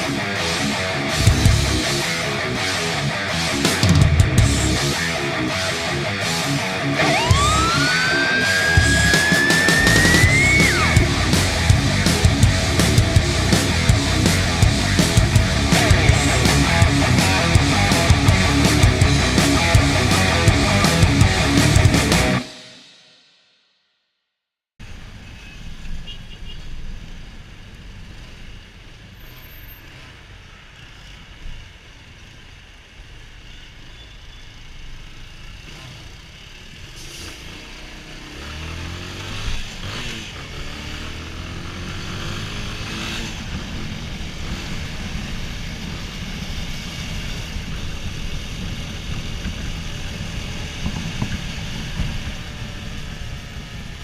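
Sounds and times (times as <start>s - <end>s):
motorcycle engine riding: 0.0s - 22.5s, 34.8s - 54.0s.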